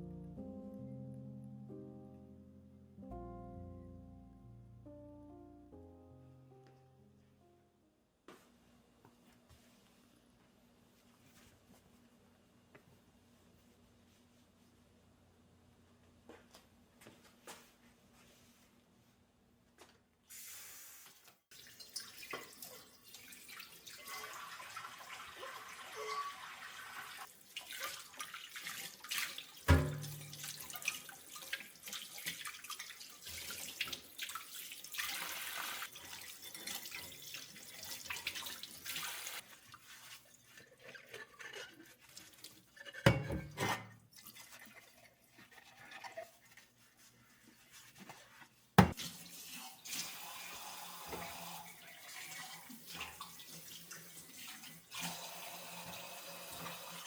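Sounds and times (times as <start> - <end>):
tap water running into sink: 21.5 - 39.4, 48.8 - 57.0.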